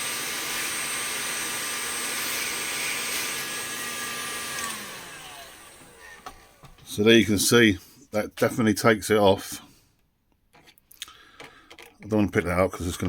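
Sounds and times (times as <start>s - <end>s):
heat gun blowing air with motor whine: 0.0s - 7.0s.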